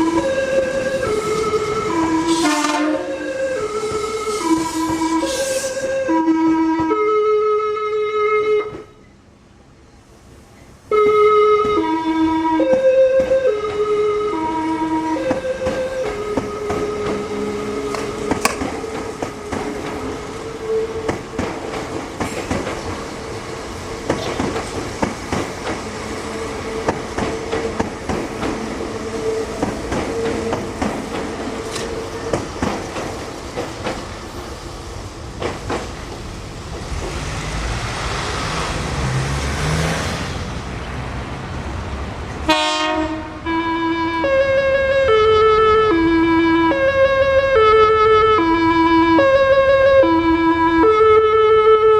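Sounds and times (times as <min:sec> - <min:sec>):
train horn melody: 0:00.0 - 0:09.0, 0:10.9 - 0:21.3, 0:42.5 - 0:51.9
steady train tone: 0:00.0 - 0:51.9
train wheels clicking over rail joints: 0:15.1 - 0:37.9.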